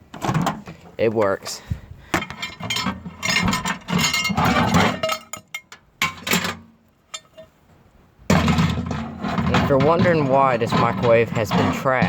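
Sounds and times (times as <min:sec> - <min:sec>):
hard objects clattering: 0:02.1 - 0:07.6, 0:08.3 - 0:12.0.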